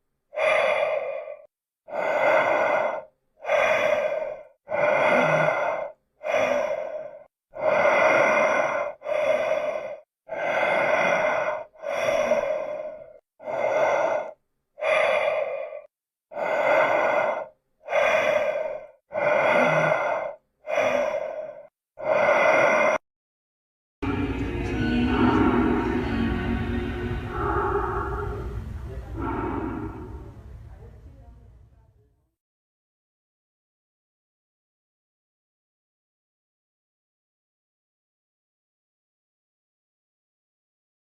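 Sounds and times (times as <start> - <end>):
heavy breathing: 0.3 - 23.0, 24.0 - 31.2.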